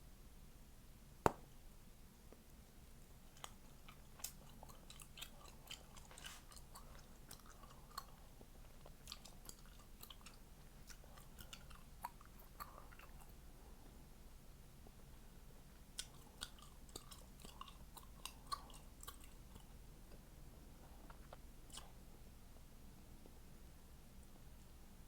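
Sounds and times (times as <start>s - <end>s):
loud gum pop: 1.2s - 1.5s
gum chewing clicks: 3.3s - 13.4s, 15.6s - 20.3s, 20.9s - 22.0s.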